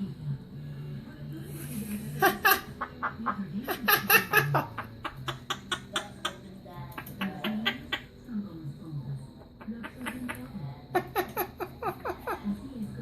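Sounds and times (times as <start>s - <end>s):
parrot squawking and chirping: 7.0s - 8.2s, 9.6s - 12.4s.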